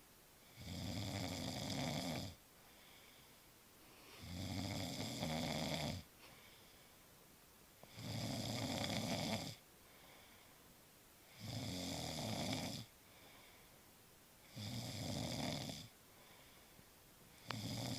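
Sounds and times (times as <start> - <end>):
man snoring: 0.4 - 2.4, 4.2 - 6.1, 7.9 - 9.6, 11.3 - 12.9, 14.4 - 15.9, 17.4 - 17.9.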